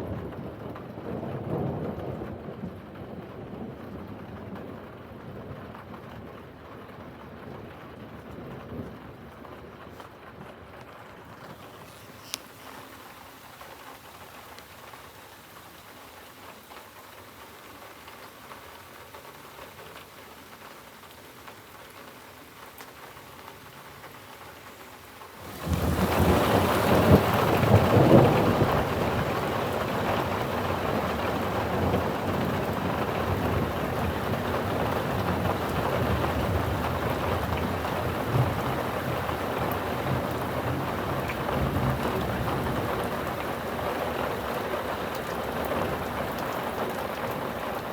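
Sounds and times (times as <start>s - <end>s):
thunder: 0.0s - 5.7s, 25.5s - 43.6s
heavy downpour: 0.0s - 47.9s
rain hiss: 9.9s - 47.9s.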